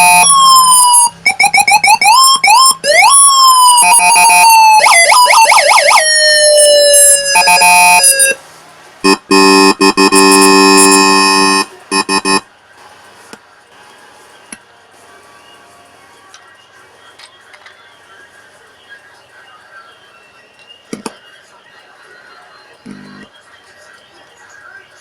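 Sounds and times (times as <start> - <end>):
electronic police siren: 0.0 - 8.4, 9.0 - 12.4, 22.9 - 23.3
harsh horn-like buzz: 9.0 - 12.4.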